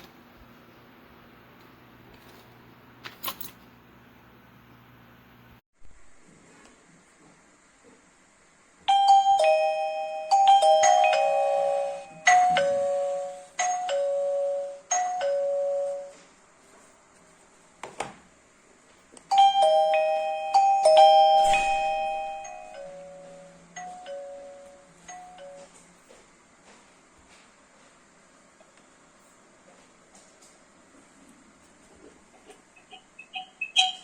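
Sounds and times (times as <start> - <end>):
electronic doorbell chime: 8.9 - 16.2, 19.3 - 25.8.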